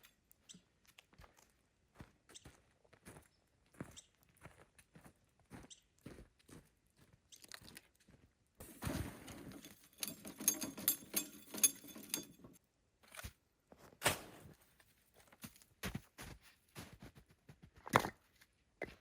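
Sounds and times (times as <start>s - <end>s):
rustling: 8.6s - 12.6s
clicks and knocks: 8.9s - 12.6s.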